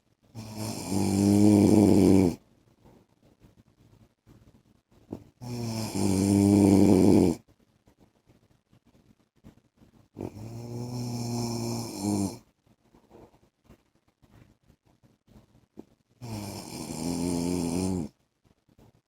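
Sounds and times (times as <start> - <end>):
man snoring: 0.4 - 2.4, 5.4 - 7.4, 10.2 - 12.4, 16.2 - 18.1.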